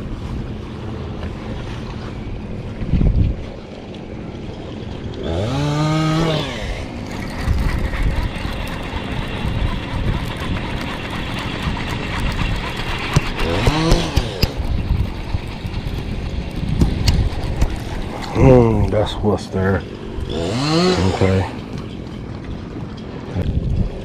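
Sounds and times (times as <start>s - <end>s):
distant chainsaw revving: 5.2s - 14.8s, 19.9s - 21.7s.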